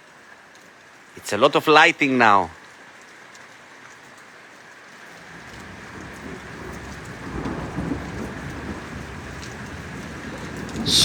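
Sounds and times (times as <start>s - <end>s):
heavy rain: 0.0s - 11.0s
thunder rumbling: 5.6s - 11.0s.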